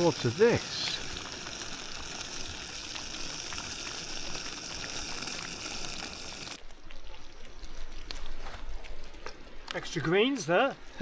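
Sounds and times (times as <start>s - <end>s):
sausages sizzling in a pan: 0.0s - 6.7s.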